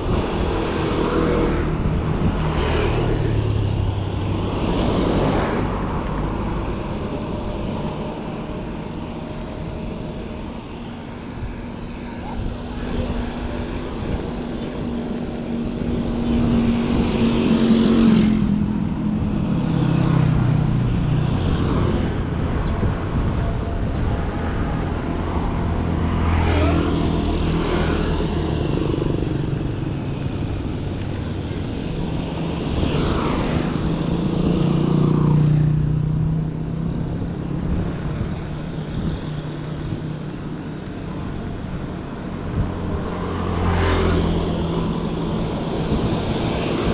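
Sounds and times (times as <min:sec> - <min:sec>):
vehicles passing: 0:00.0 - 0:46.9.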